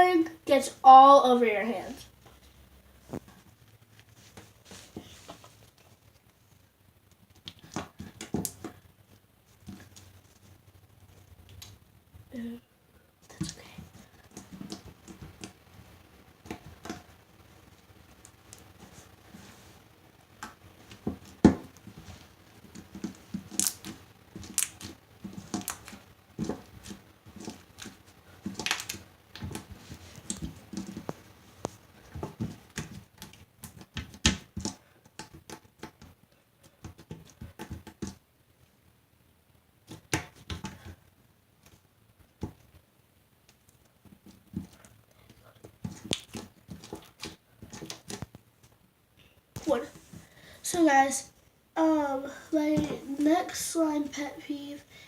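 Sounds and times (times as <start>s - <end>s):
slime squelching sticky pops: 22.6s - 31.2s, 45.6s - 48.3s.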